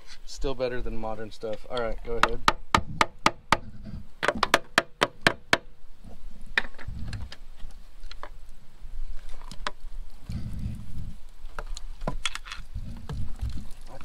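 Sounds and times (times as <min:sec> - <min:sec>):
dull low thuds: 0:02.2 - 0:05.6.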